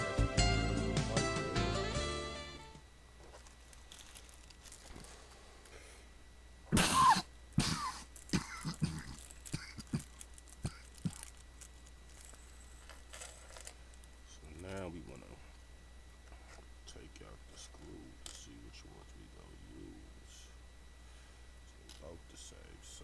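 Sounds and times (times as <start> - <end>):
person coughing: 6.7 - 11.3.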